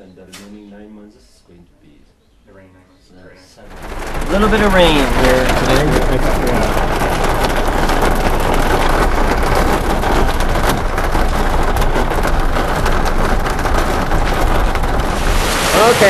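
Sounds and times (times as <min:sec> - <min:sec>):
hail and heavy rain pelting: 0:03.7 - 0:16.0.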